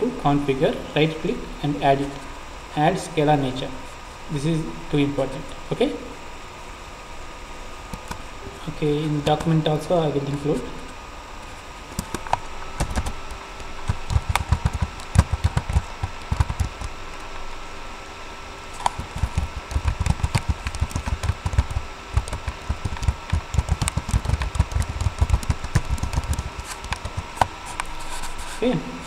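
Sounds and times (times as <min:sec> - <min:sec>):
faint electrical hum: 0:00.0 - 0:29.0
typing on computer keyboard: 0:12.8 - 0:13.2, 0:13.8 - 0:16.9, 0:18.8 - 0:27.2.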